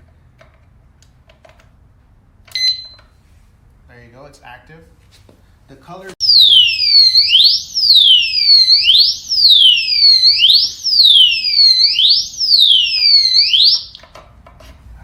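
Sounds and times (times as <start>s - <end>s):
electronic alarm siren: 6.2s - 14.0s.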